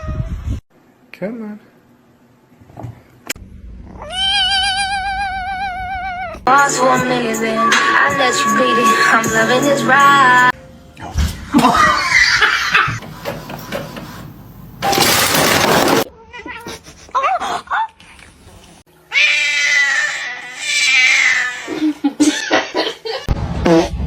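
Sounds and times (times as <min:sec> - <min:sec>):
cats meowing and yowling: 0:19.1 - 0:21.8.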